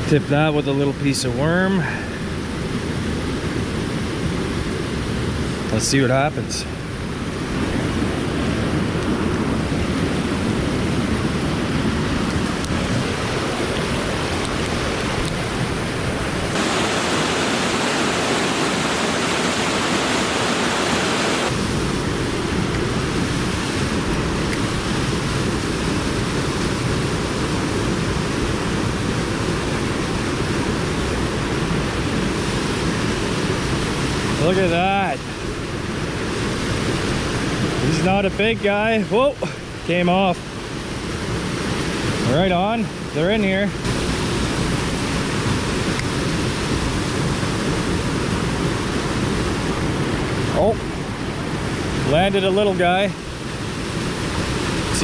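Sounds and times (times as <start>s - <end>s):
creek rushing over rocks: 11.8s - 21.7s.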